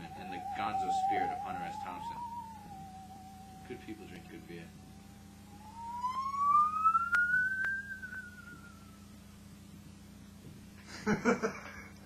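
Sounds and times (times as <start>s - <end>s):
musical saw wavering note: 0.0s - 9.3s.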